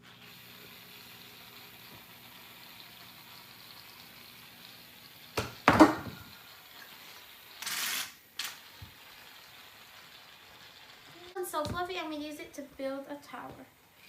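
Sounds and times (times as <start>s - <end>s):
aerosol can hissing: 0.1s - 11.5s
sharp knocks: 5.4s - 6.2s.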